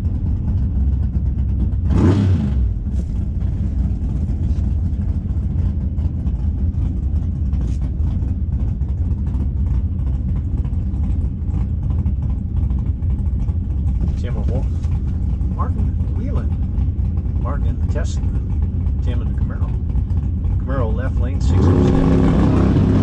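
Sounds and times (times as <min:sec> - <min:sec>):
car engines idling: 0:00.0 - 0:23.0.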